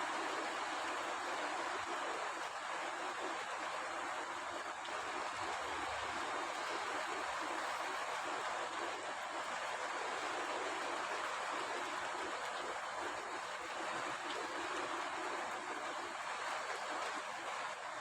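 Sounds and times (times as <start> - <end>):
rain falling steadily: 0.0 - 18.0.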